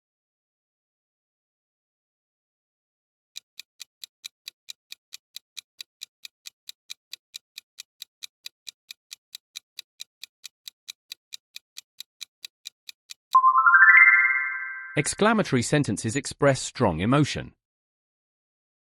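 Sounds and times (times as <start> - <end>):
timer ticking: 3.4 - 13.5.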